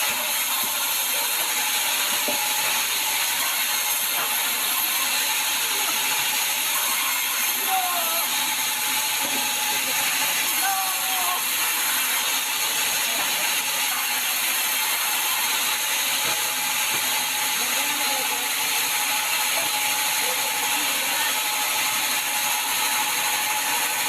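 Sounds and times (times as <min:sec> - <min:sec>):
sawmill saw cutting log: 0:00.0 - 0:24.0.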